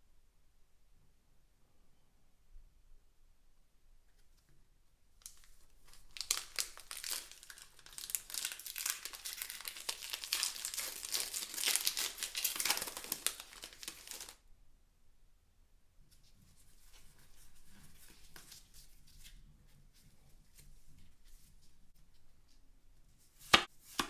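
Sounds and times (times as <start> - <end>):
crinkly plastic packaging rustling: 5.2 - 14.4.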